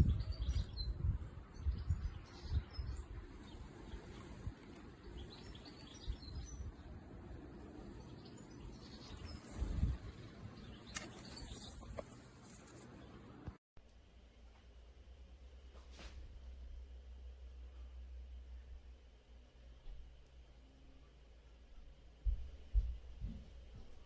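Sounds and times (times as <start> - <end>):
low microphone rumbling: 0.0 - 7.8
small birds chirping: 0.0 - 13.3.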